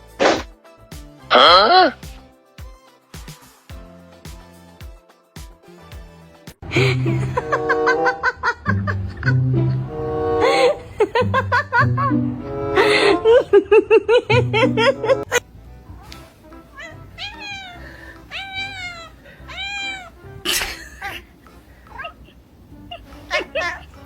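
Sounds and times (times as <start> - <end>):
background music: 0.0 - 24.0
cat meowing: 16.7 - 20.3, 22.9 - 24.0.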